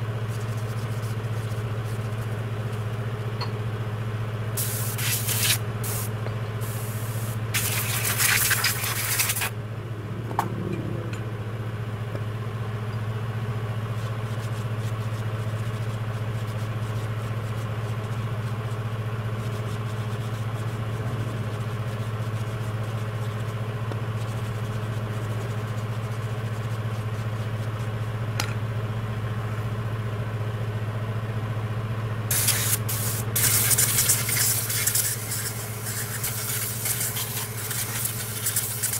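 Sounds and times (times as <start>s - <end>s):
air compressor humming: 0.0s - 14.0s, 32.3s - 38.9s
compressed air blasts: 4.6s - 9.6s, 32.3s - 38.9s.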